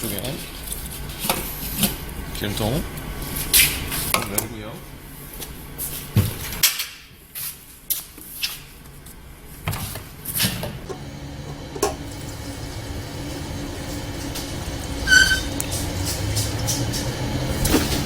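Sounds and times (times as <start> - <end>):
gasoline pouring into tank: 10.9 - 18.0.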